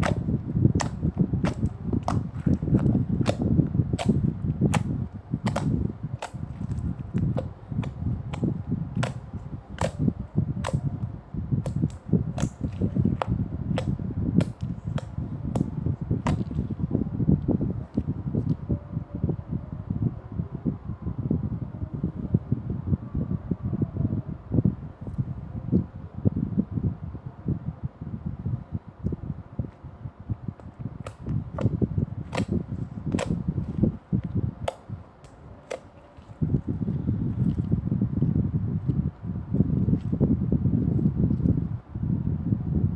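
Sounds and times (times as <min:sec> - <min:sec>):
slime squishing: 0:04.0 - 0:10.0.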